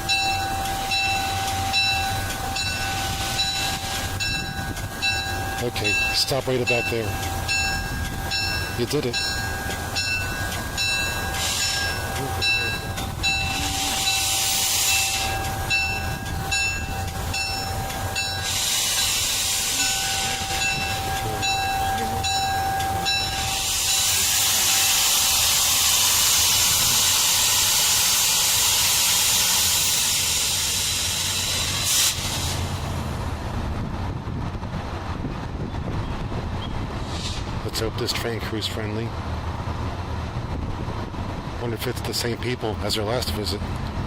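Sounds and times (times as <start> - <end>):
locomotive bell ringing: 0.0 - 33.0
air brakes hissing: 0.0 - 33.1, 36.9 - 37.6
locomotive idle rumble: 0.0 - 34.2.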